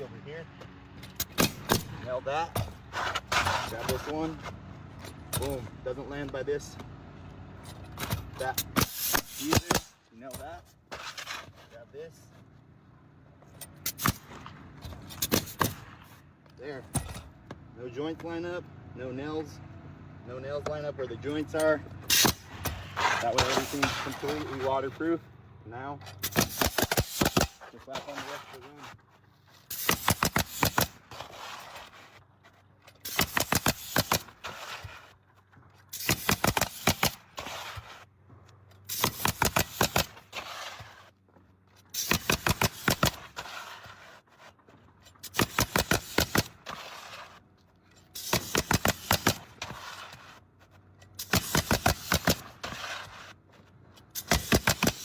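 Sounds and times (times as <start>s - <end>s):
nail gun firing: 1.2s - 2.0s, 8.6s - 10.0s, 13.8s - 14.3s, 15.1s - 15.9s, 22.1s - 22.8s, 26.2s - 27.7s, 29.7s - 31.3s, 33.0s - 34.8s, 35.9s - 37.8s, 38.9s - 40.4s, 41.9s - 43.3s, 45.2s - 46.8s, 48.2s - 49.8s, 51.2s - 52.6s, 54.1s - 55.0s
shingles scraping: 1.3s - 4.6s, 7.8s - 12.6s, 22.1s - 25.2s, 26.2s - 55.0s.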